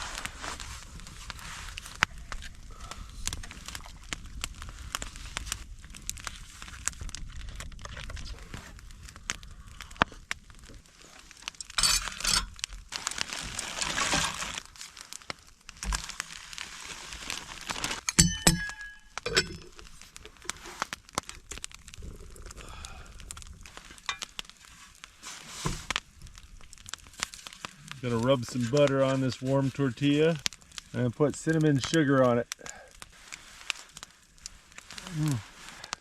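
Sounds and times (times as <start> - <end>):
crinkling and rustling: 0.0 - 36.0
ringing clinks: 18.1 - 19.7.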